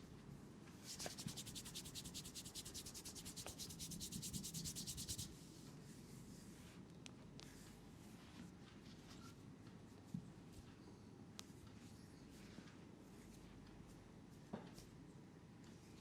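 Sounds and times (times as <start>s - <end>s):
fast rubbing strokes: 0.9s - 5.4s.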